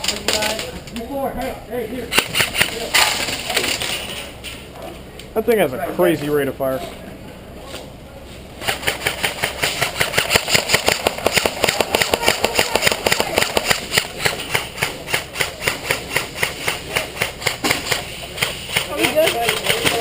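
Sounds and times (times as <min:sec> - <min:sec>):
airsoft gun firing full auto: 0:02.1 - 0:03.2, 0:08.6 - 0:20.0.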